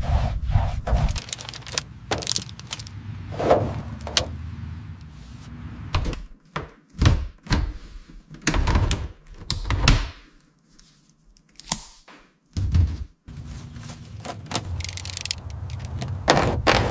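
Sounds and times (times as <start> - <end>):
heavy thuds and knocks: 2.1 - 4.3.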